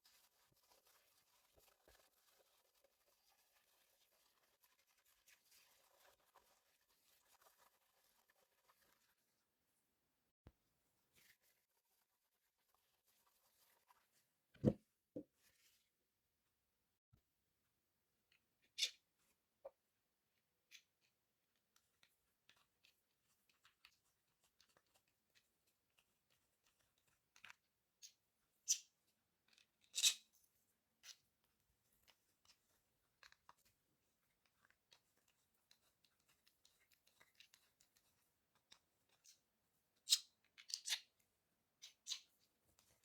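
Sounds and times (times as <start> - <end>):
small clicks and scrapes: 20.7 - 30.4, 31.0 - 41.2, 41.8 - 43.0.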